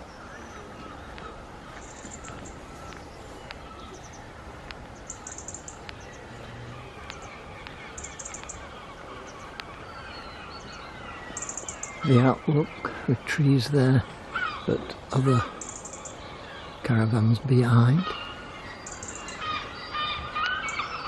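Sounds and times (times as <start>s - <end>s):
faint ticks: 1.1s - 6.2s, 7.0s - 8.6s.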